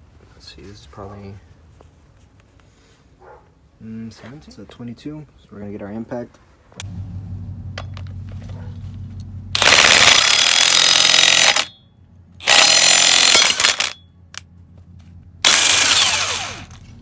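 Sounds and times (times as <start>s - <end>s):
impact wrench hammering: 9.6s - 11.8s, 12.4s - 14.0s, 15.4s - 16.7s.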